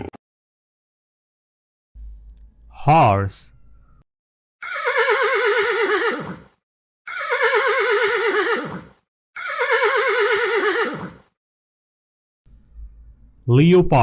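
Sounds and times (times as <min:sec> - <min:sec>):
horse neighing: 0:04.6 - 0:06.5, 0:07.1 - 0:11.2.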